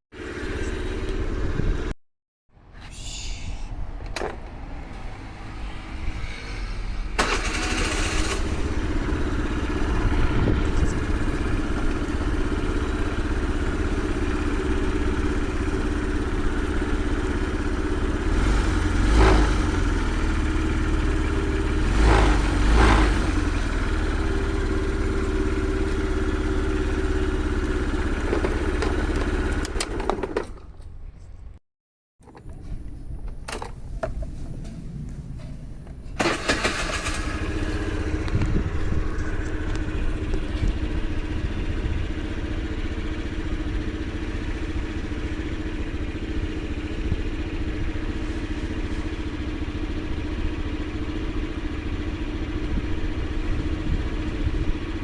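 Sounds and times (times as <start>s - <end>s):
motorcycle engine idling: 7.5s - 29.6s, 36.3s - 55.0s.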